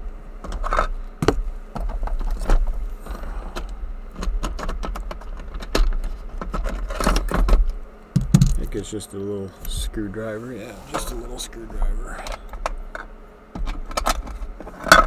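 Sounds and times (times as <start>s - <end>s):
low handling rumble: 0.0s - 4.2s, 7.6s - 13.2s.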